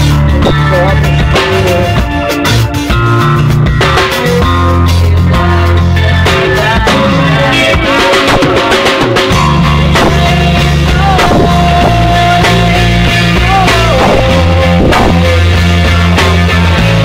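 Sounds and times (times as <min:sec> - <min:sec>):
lead guitar bending notes: 0:00.0 - 0:17.0
loud rock music: 0:00.0 - 0:17.0.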